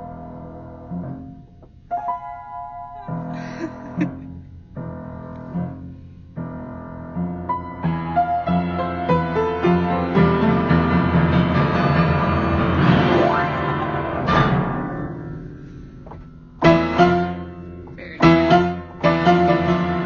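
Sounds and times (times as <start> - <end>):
piano playing: 0.0 - 20.0.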